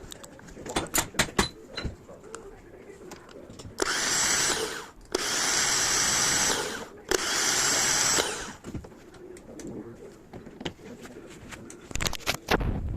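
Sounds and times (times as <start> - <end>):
starter motor whining: 3.8 - 8.6.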